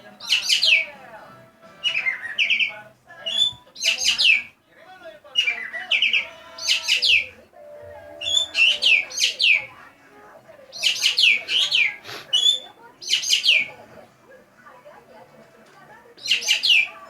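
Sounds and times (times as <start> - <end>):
bird singing sharp downward notes: 0.2 - 1.0, 1.8 - 4.5, 5.4 - 9.7, 16.2 - 17.0.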